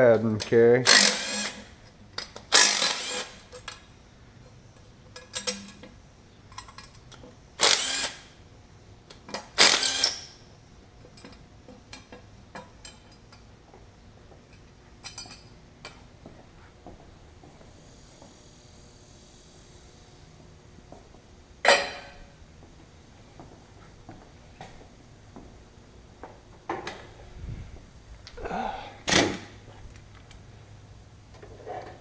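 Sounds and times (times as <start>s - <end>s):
pneumatic tool bursts: 0.8s - 1.7s, 2.4s - 3.5s, 7.6s - 8.4s, 9.6s - 10.4s.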